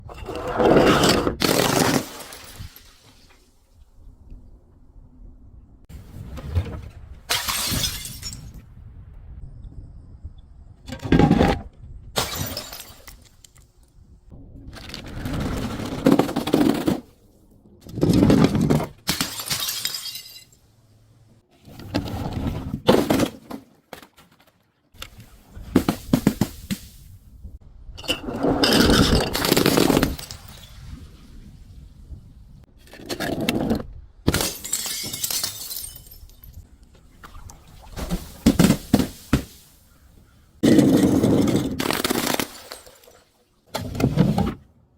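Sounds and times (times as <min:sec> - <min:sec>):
glass bottles crushed and breaking: 0:01.0 - 0:03.0, 0:07.3 - 0:08.6, 0:12.2 - 0:13.3, 0:19.0 - 0:20.6, 0:28.0 - 0:30.8, 0:34.3 - 0:36.6, 0:40.6 - 0:43.2.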